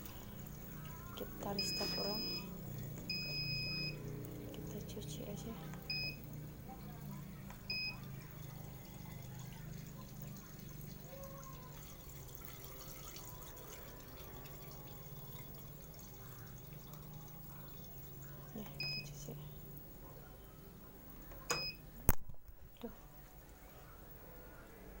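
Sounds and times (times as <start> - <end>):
washing machine beep: 0.0 - 6.4, 7.6 - 9.4, 17.1 - 20.0, 20.6 - 22.0
water running in: 0.0 - 20.1.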